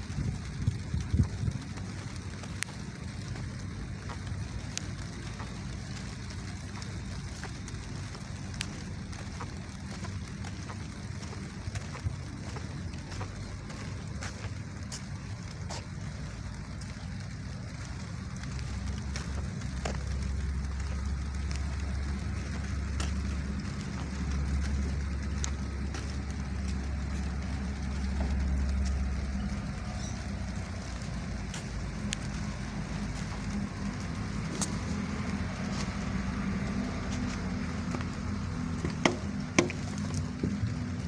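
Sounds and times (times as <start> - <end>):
sharp clicks and taps: 37.1 - 40.7.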